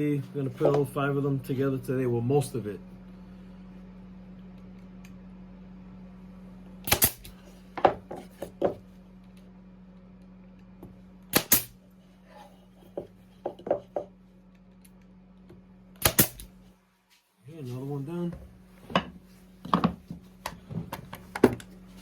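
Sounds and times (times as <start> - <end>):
nail gun firing into wood: 6.8 - 7.3, 11.3 - 11.8, 16.0 - 16.5
wooden boards knocking: 13.0 - 14.1.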